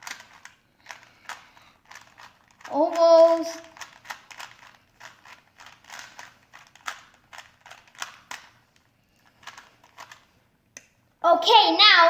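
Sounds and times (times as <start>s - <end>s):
puzzle cube layers clicking: 0.0s - 8.6s, 9.4s - 10.9s.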